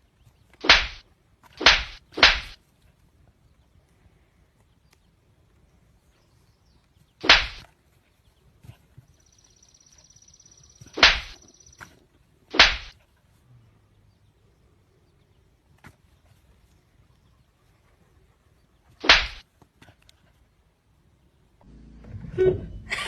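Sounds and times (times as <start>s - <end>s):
loud sharp cracks: 0.6s - 1.0s, 1.6s - 2.6s, 7.2s - 7.6s, 11.0s - 11.4s, 12.5s - 12.9s, 19.0s - 19.4s
high buzzing tone: 21.7s - 23.0s.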